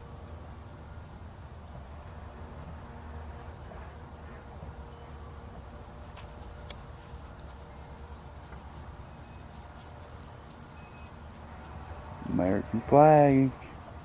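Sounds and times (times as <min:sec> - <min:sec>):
light clicks and ticks: 0:06.1 - 0:12.4.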